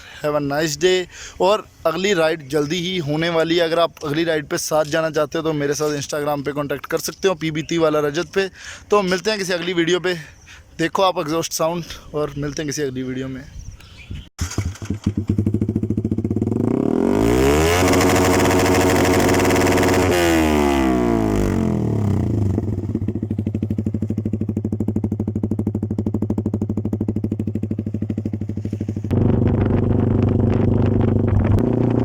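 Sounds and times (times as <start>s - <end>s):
motorcycle engine revving and idling: 14.4s - 32.0s.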